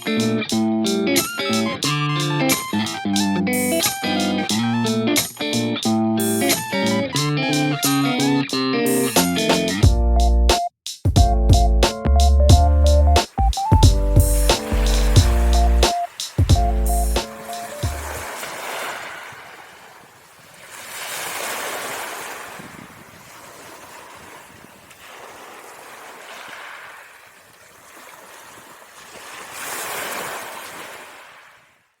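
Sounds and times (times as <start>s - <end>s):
wind blowing in gusts: 13.7s - 25.5s.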